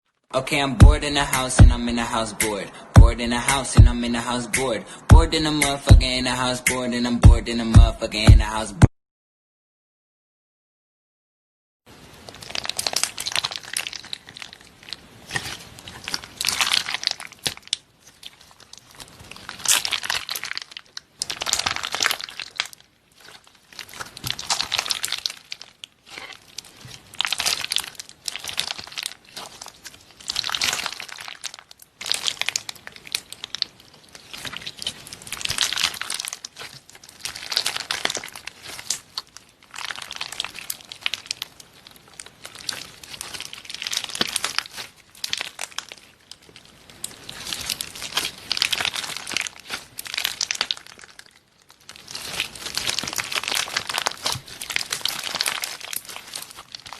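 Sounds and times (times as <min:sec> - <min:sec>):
slime squishing by hand: 0:11.9 - 0:56.9.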